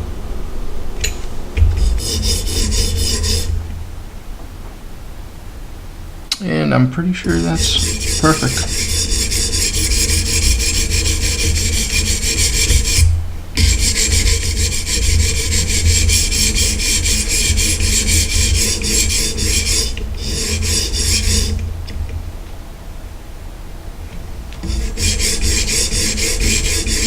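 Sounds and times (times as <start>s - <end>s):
sharpening stone rasping on knife: 7.4s - 12.8s.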